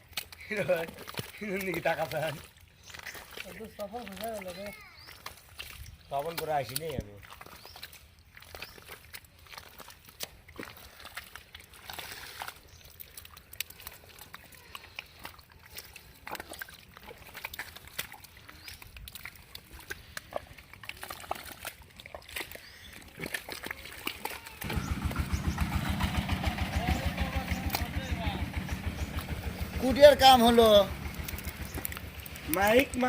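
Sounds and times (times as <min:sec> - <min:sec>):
small clicks and squelches: 0:00.0 - 0:24.7, 0:30.9 - 0:33.0
water and mud splashing: 0:00.0 - 0:33.0
small engine running: 0:24.5 - 0:33.0.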